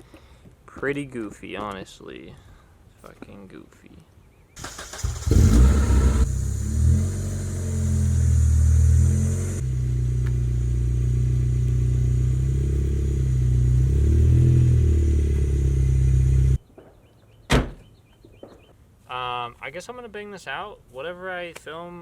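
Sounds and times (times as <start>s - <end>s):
car engine running: 4.6s - 16.6s.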